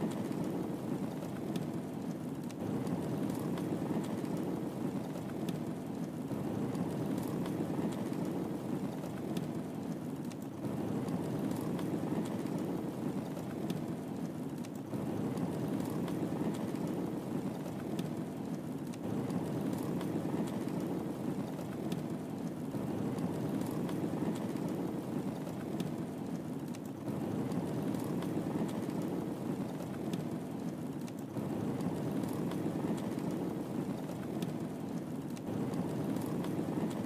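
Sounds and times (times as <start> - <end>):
fire burning rush: 0.0 - 37.0
fire pops and snaps: 0.0 - 37.0.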